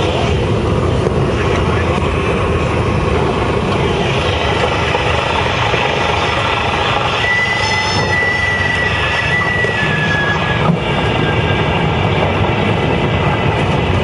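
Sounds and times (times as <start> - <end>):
airplane engine drone in cabin: 0.0 - 6.6.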